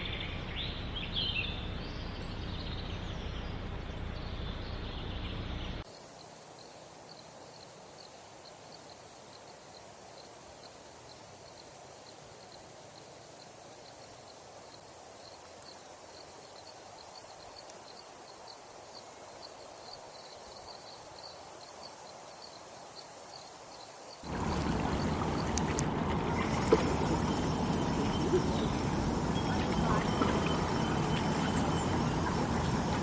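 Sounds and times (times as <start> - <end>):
loud steady rushing noise: 24.2 - 33.0.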